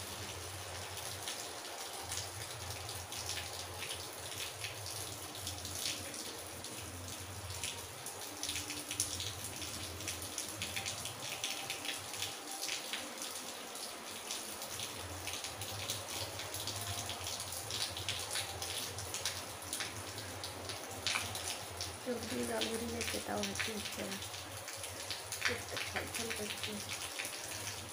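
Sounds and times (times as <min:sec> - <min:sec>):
water splashing and pattering: 0:17.7 - 0:27.9.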